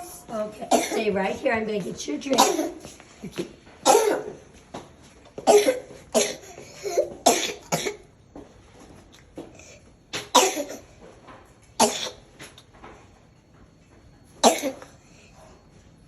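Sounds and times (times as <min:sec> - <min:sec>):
young child coughing: 0:00.6 - 0:01.1, 0:02.3 - 0:02.9, 0:03.8 - 0:04.4, 0:05.4 - 0:08.1, 0:10.3 - 0:10.8, 0:11.8 - 0:12.2, 0:14.4 - 0:14.9.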